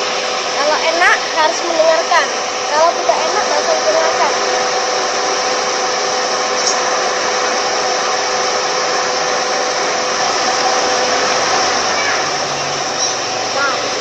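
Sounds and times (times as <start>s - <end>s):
car air conditioning fan whirring: 0.0s - 14.0s.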